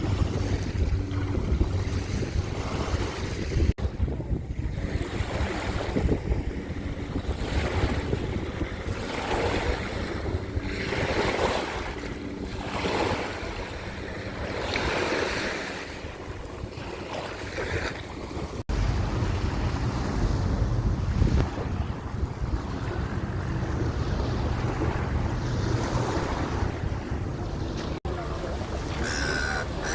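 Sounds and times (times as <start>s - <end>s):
wind buffeting microphone: 0.0s - 28.1s
ocean waves washing ashore: 0.0s - 29.9s.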